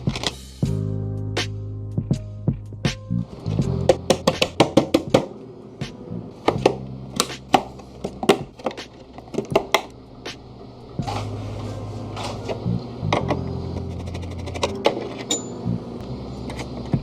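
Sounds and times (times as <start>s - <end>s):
quiet background music: 0.0s - 17.0s
computer parts clicking and knocking: 6.5s - 9.9s, 13.1s - 15.6s.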